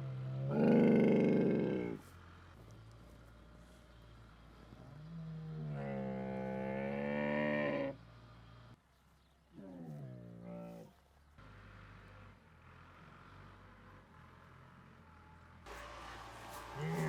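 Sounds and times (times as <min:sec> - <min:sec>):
camel bellowing: 0:16.7 - 0:17.0.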